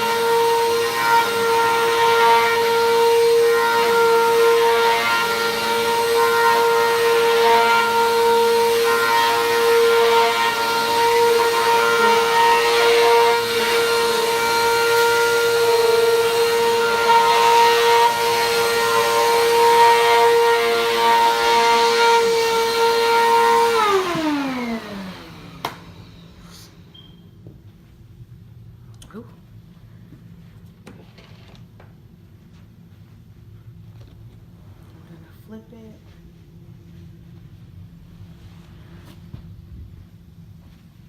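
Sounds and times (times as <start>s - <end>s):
vacuum cleaner motor whining: 0.0s - 27.2s.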